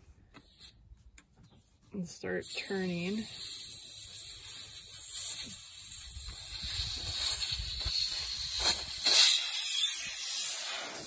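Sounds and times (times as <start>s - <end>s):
air hissing from tire valve: 2.4s - 11.0s.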